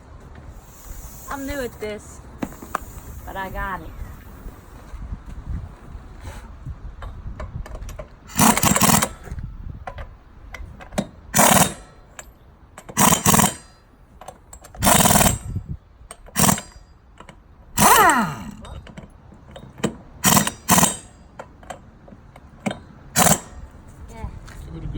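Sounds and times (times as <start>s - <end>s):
power tool running in bursts: 8.3s - 9.2s, 11.4s - 11.9s, 13.0s - 13.7s, 14.8s - 15.4s, 16.4s - 16.7s, 17.8s - 18.5s, 20.2s - 21.1s, 23.2s - 23.6s.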